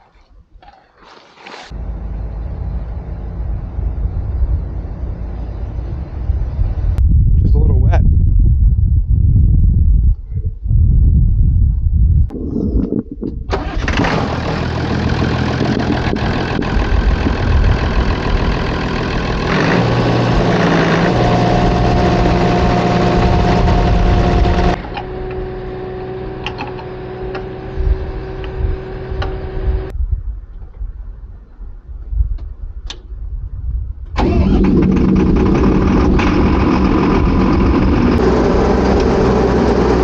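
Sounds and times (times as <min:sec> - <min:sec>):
engine running with steady hum: 0:01.7 - 0:07.0, 0:13.5 - 0:29.9, 0:34.1 - 0:40.0.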